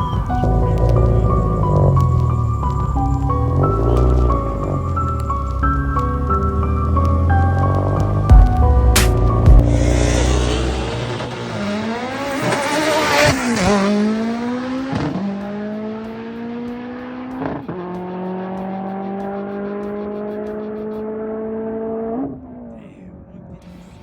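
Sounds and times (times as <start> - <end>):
race car engine accelerating: 0.0 - 22.7.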